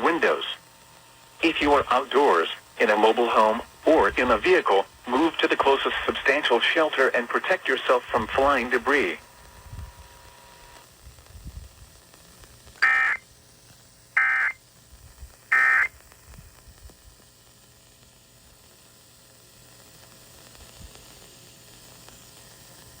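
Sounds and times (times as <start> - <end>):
faint steady hiss: 0.0 - 23.0
buzzing digital data tones: 12.8 - 13.3, 14.2 - 14.6, 15.5 - 16.0.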